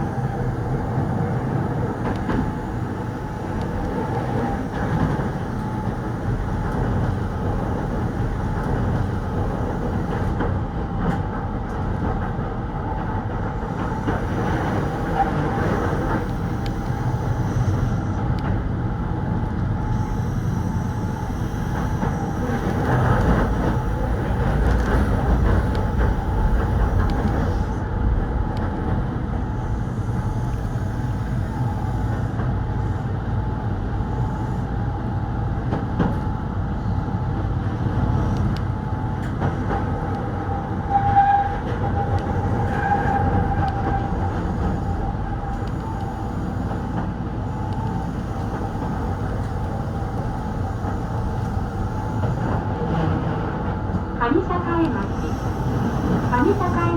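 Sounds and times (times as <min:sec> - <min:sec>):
electric train rumbling on rails: 0:00.0 - 0:56.9
train wheel whine and squeal: 0:00.0 - 0:56.9.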